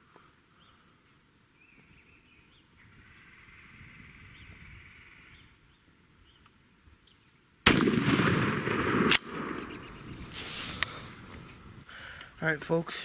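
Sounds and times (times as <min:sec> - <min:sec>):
faint bird chirps: 0:00.5 - 0:07.4, 0:09.6 - 0:10.5
shotgun blast: 0:07.6 - 0:09.9.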